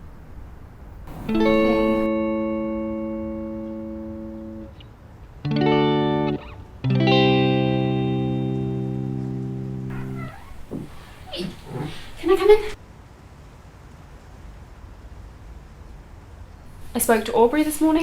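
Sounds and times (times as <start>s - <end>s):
guitar chords ringing: 1.1s - 4.8s, 5.5s - 10.0s.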